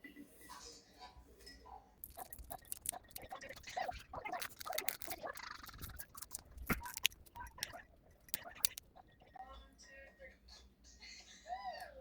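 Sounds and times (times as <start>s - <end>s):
small parts clicking and scraping: 2.0s - 9.1s.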